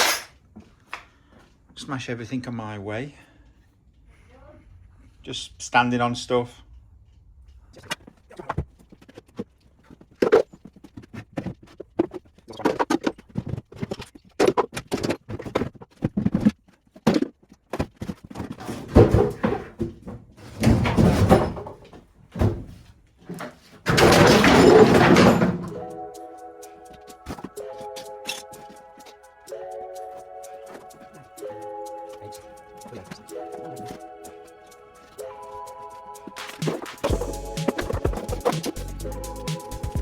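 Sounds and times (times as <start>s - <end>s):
junk knocking and scraping: 8.0s - 26.0s
loud rattle of debris: 17.1s - 26.0s.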